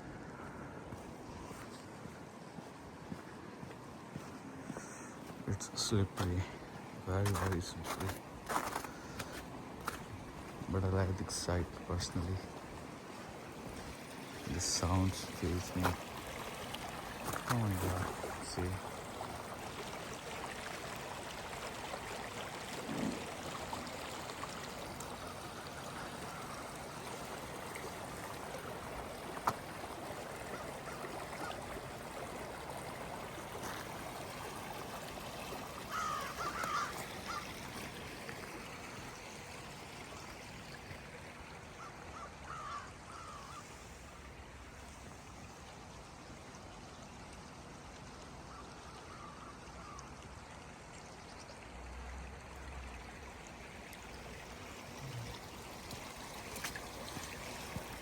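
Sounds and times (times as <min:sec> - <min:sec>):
stream water flowing: 0:00.0 - 0:58.0
bird calls: 0:35.9 - 0:37.6.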